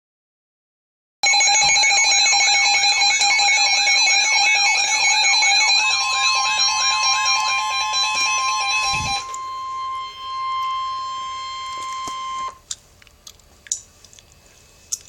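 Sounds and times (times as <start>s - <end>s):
warbling electronic alert tone: 1.2s - 12.6s.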